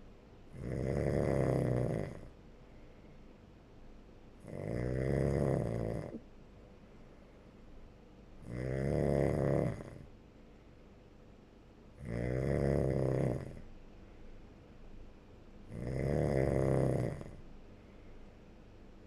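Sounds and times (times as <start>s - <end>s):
snoring: 0.5s - 2.3s, 4.4s - 6.2s, 8.4s - 10.1s, 12.0s - 13.7s, 15.7s - 17.4s.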